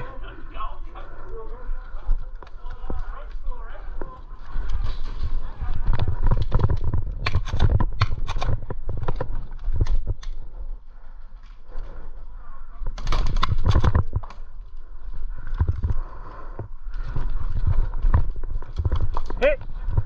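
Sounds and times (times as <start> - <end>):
sharp knocks and clicks: 6.2 - 10.4.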